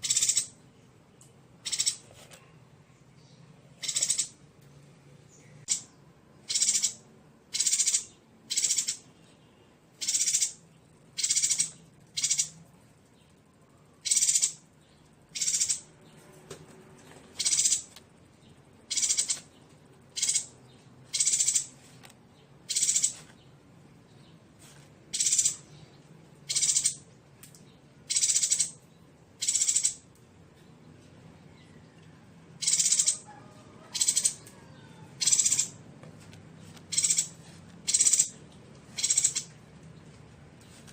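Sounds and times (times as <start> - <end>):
bird making harsh high calls: 0.0 - 0.5, 3.8 - 4.3, 35.2 - 35.8, 37.9 - 38.3, 39.0 - 39.5.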